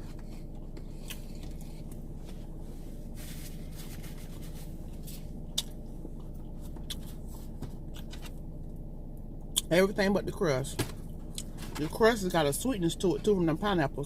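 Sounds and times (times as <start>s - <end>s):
food wrapping rustling: 0.0s - 5.4s
car interior hum: 0.0s - 14.0s.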